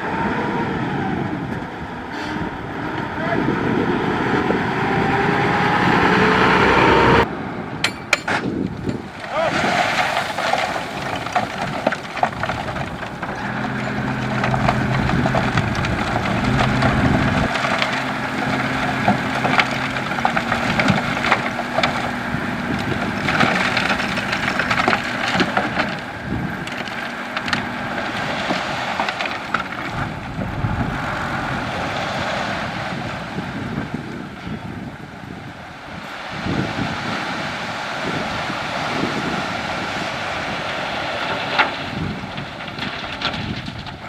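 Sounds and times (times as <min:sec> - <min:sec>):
construction machinery engine hum: 0:00.0 - 0:44.0
stones crunching and clattering: 0:07.9 - 0:33.0, 0:40.7 - 0:44.0.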